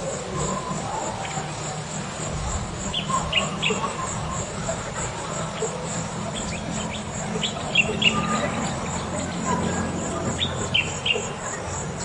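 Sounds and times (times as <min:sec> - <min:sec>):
insects trilling: 0:00.0 - 0:12.0
steady low murmur: 0:00.0 - 0:12.0.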